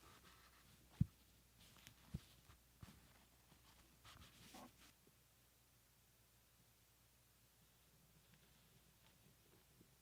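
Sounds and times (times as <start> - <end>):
faint rustling: 7.6 - 10.0.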